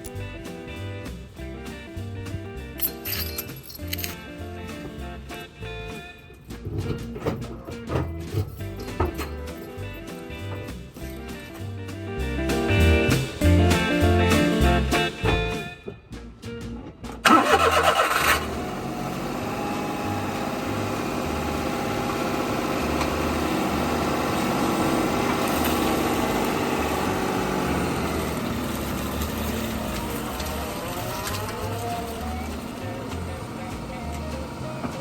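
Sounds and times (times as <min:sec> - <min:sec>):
car engine starting and idling: 0:16.7 - 0:35.0.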